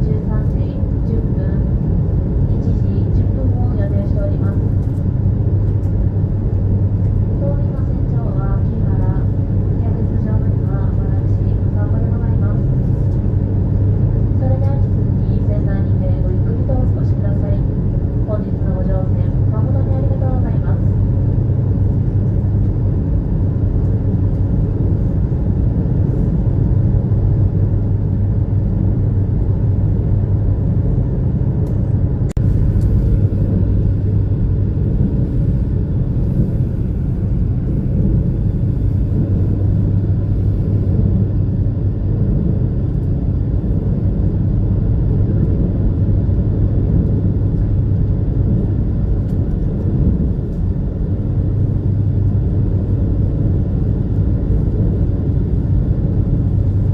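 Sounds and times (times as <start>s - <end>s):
ferry engine drone: 0.0s - 56.9s.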